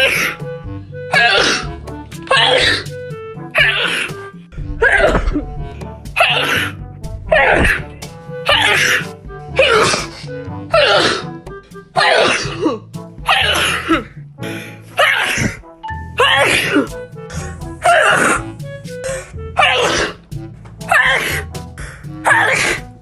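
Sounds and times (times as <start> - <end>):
background music: 0.0 - 23.0
person sneezing: 1.1 - 1.7, 2.3 - 2.9, 6.2 - 7.9, 8.5 - 11.3, 12.0 - 14.2, 16.2 - 18.5, 19.1 - 20.2, 20.9 - 21.5, 22.2 - 22.8.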